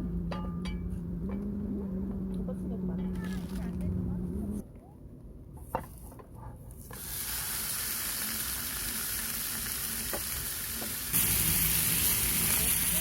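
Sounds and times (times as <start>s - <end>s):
food sizzling in a hot pan: 7.0s - 13.0s.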